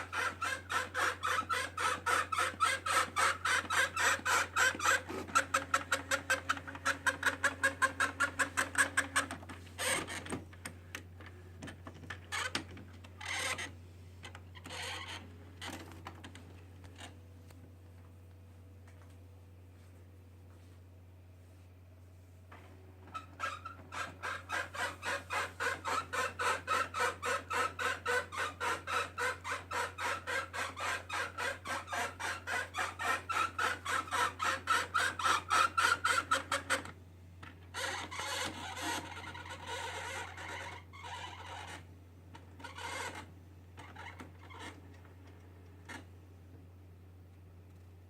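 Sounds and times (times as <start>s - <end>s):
printer gears squeaking: 0.0s - 10.4s, 23.1s - 36.9s, 37.7s - 41.8s, 42.6s - 44.8s.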